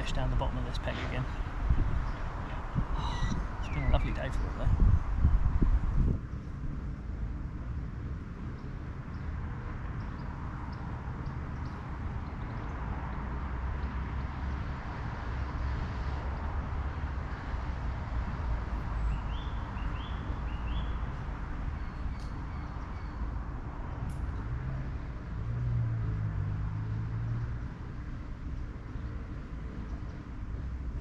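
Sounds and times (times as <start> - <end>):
outdoor rumble and hiss: 0.0 - 31.0
short rising bird chirps: 2.9 - 4.2.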